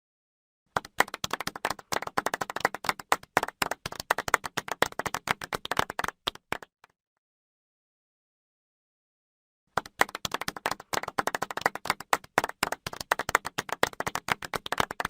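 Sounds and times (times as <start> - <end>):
people clapping: 0.7 - 7.0, 9.7 - 15.0.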